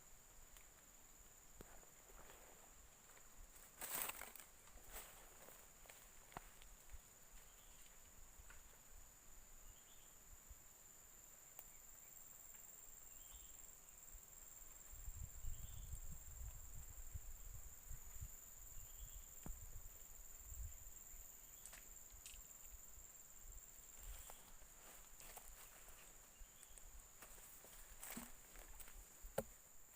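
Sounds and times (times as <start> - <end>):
insects droning: 0.0 - 29.9
faint chirps: 7.4 - 8.1, 9.4 - 10.4, 11.2 - 16.6, 17.2 - 28.9.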